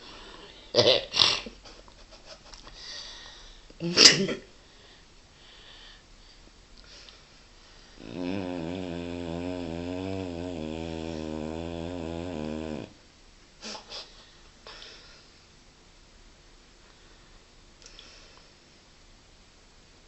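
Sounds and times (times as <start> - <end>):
dog snoring: 8.0 - 13.0.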